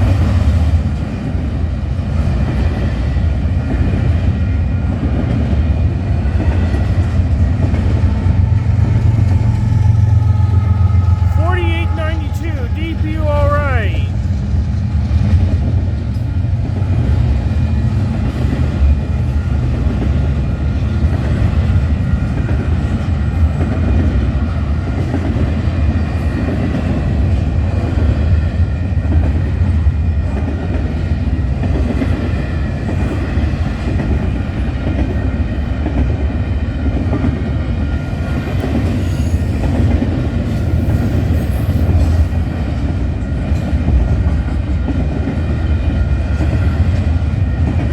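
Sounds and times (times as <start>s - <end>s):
train wheels rumbling on rails: 14.6s - 47.9s.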